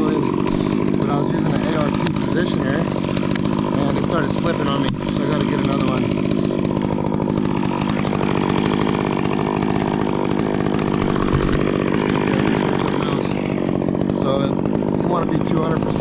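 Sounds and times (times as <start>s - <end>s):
chainsaw running: 0.0s - 16.0s.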